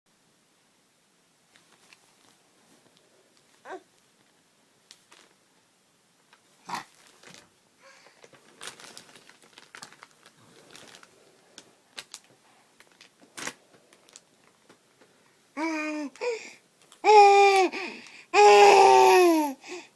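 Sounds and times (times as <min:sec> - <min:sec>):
crinkling and rustling: 0:01.5 - 0:05.5, 0:06.2 - 0:15.4, 0:16.1 - 0:17.7.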